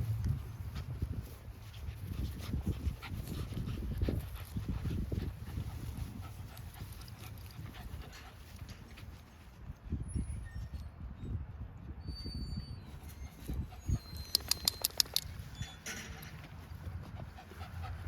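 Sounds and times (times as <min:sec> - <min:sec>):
steady low rumble: 0:00.0 - 0:08.6
dog panting: 0:01.7 - 0:08.7, 0:16.3 - 0:18.0
small clicks: 0:14.2 - 0:15.4.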